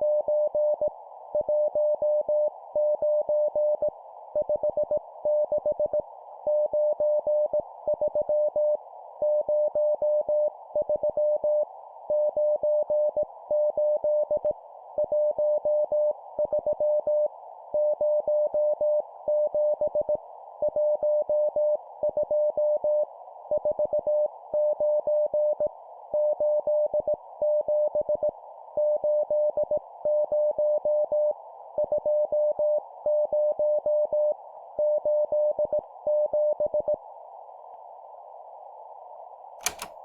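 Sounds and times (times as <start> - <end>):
sharp click: 39.6 - 40.0.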